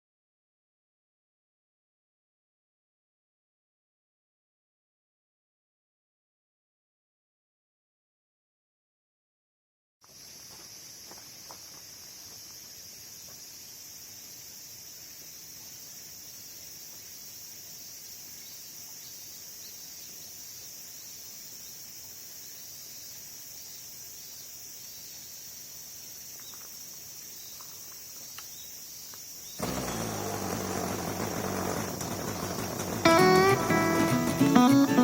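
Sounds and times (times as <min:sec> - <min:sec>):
insects chirring: 0:10.0 - 0:34.5
acoustic guitar music: 0:29.6 - 0:35.0.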